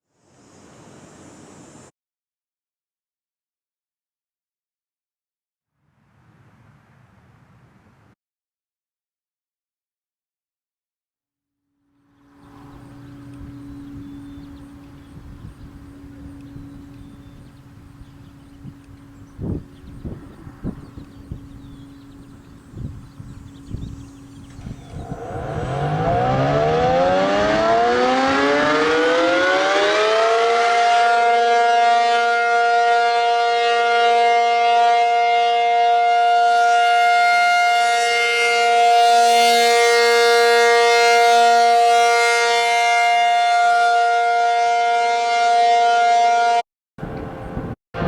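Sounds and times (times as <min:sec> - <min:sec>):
tornado siren winding up: 0:20.7 - 0:48.0.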